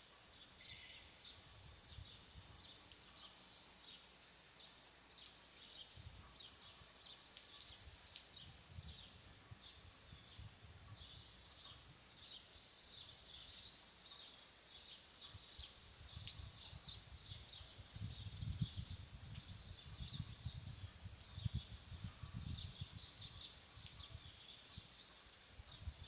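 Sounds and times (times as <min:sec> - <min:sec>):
birds chirping: 0:00.0 - 0:26.0.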